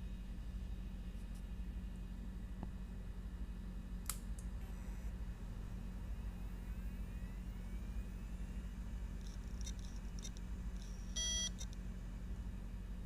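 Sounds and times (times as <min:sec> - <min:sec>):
hard drive humming: 0:00.0 - 0:13.0
short beep: 0:11.1 - 0:11.6.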